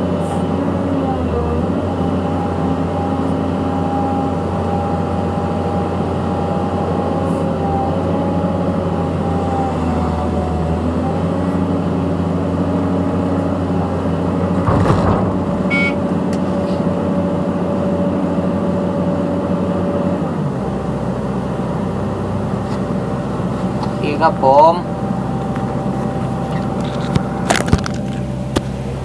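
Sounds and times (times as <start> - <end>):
excavator diesel engine running: 0.0 - 29.0
brief clatter: 14.5 - 15.7.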